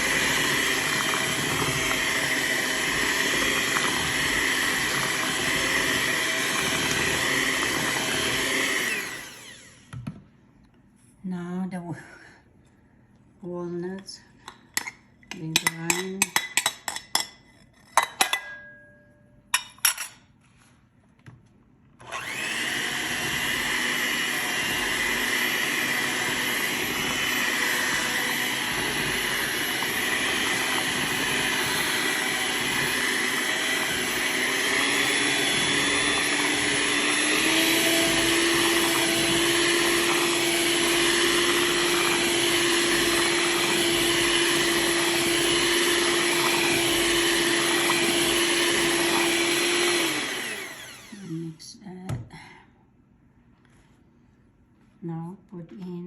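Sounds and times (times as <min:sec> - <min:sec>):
electric grinder grinding nuts: 0:00.0 - 0:10.0, 0:22.0 - 0:51.6.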